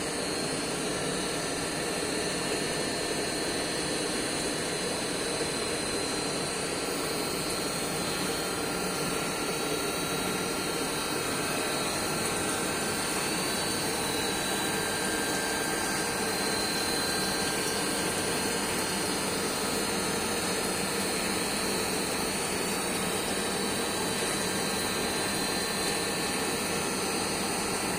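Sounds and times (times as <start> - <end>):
machine hiss and hum: 0.0 - 27.9.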